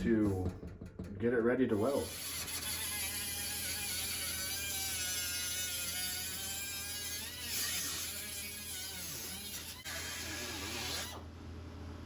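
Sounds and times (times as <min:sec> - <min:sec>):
cutoff wheel cutting metal: 0:01.8 - 0:11.2.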